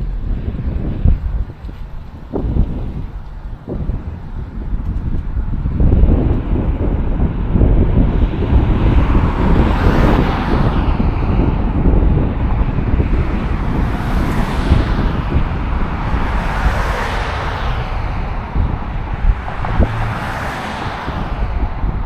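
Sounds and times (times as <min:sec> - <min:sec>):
cars passing on road: 0:00.0 - 0:22.0
wind buffeting microphone: 0:00.0 - 0:22.0.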